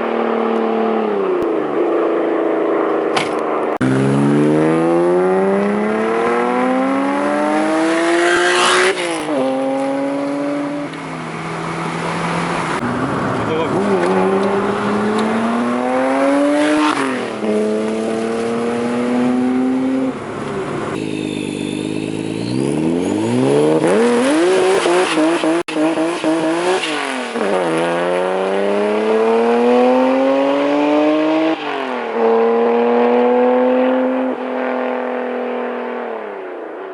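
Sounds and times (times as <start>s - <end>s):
car engine accelerating: 0.0s - 36.7s.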